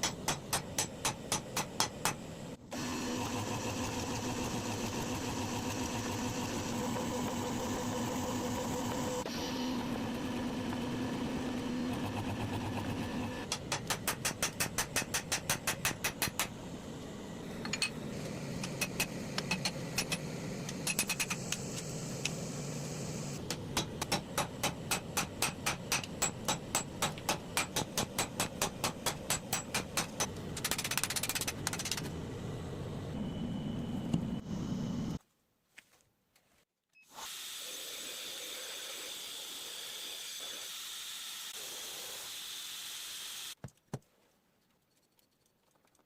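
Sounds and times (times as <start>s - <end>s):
hammer striking an anvil: 23.5s - 30.3s.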